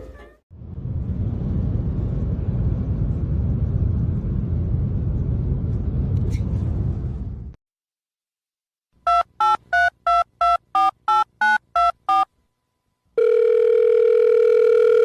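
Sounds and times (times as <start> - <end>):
telephone keypad beeps: 9.1 - 12.3
telephone ringing tone: 13.2 - 15.0.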